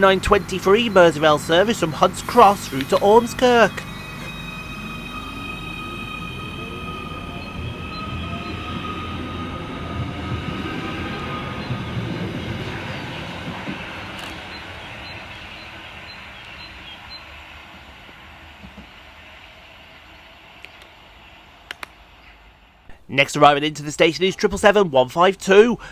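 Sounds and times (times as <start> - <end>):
electric train motors whining: 0.0 - 25.9
train wheels rumbling on rails: 0.0 - 25.9.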